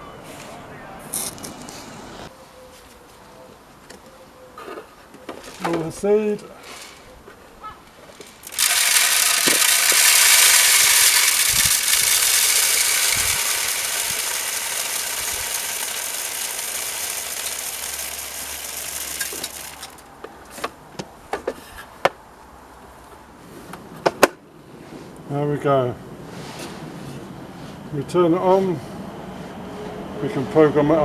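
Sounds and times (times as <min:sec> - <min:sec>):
bird seed pouring rattle: 0:08.3 - 0:20.0.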